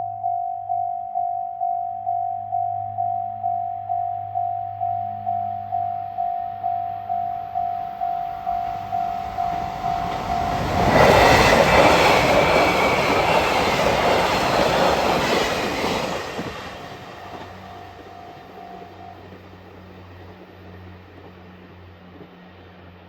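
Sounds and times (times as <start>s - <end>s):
level crossing bell ringing: 0.2s - 10.8s
train wheel and rail noise: 6.2s - 23.0s.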